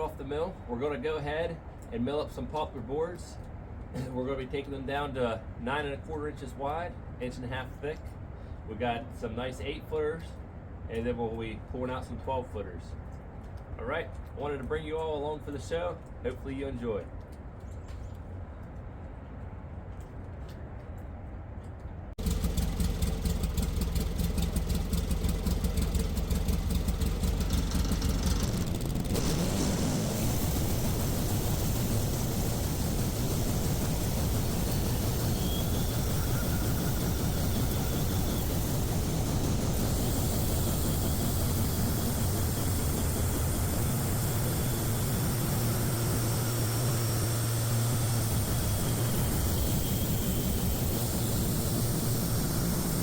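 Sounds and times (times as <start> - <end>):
saw cutting through log drone: 22.2 - 53.0
sawmill engine running: 22.2 - 53.0.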